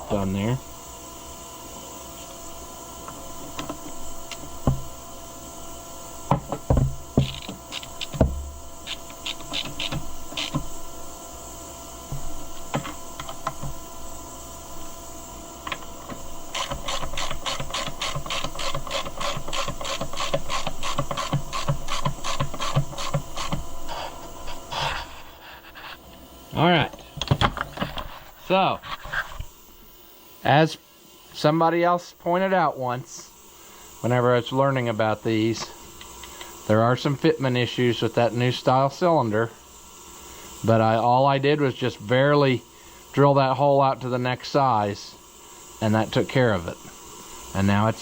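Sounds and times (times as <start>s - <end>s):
rasping file strokes: 16.6s - 24.6s.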